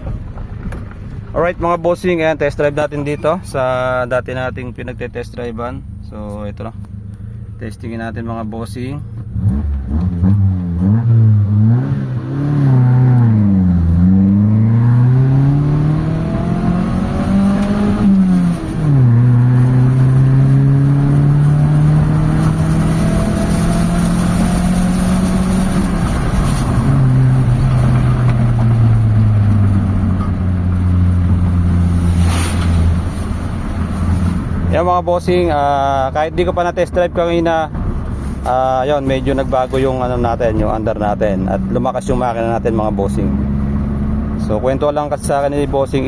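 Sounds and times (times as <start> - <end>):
car engine accelerating hard: 9.2 - 46.0.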